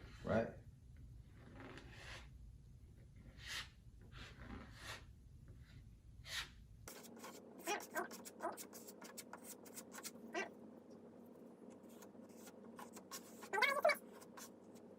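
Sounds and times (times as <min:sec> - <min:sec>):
putty knife scraping compound: 0:01.4 - 0:02.4, 0:03.2 - 0:10.5, 0:11.7 - 0:14.9.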